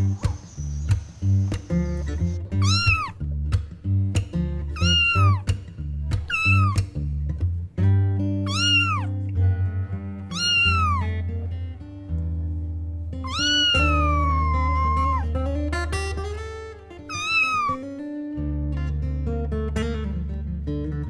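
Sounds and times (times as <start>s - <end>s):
guitar music: 0.0s - 21.0s
cat meowing: 2.6s - 3.1s, 4.8s - 5.4s, 8.5s - 9.1s, 10.3s - 11.0s, 13.2s - 15.3s, 17.1s - 17.8s.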